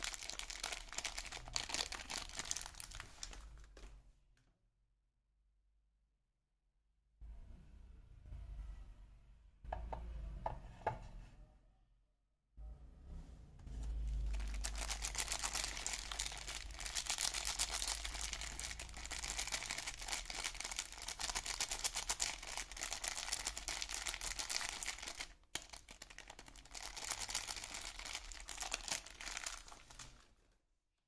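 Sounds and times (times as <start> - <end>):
packaging crinkling: 0.0 - 3.8, 14.1 - 30.5.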